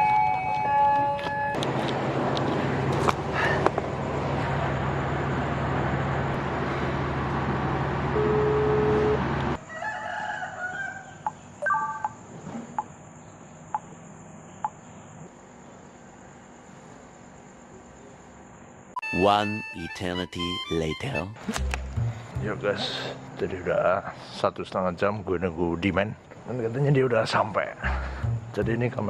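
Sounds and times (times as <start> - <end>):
street noise with low hum: 0.0 - 29.0.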